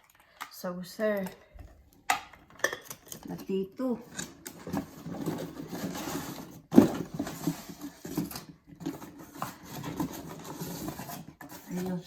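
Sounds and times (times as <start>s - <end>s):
dishes clicking and knocking: 2.1s - 3.3s.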